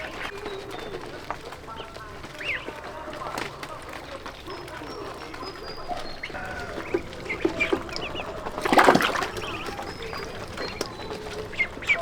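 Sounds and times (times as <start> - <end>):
chickens clucking: 0.0 - 12.0
small birds chirping: 0.0 - 12.0.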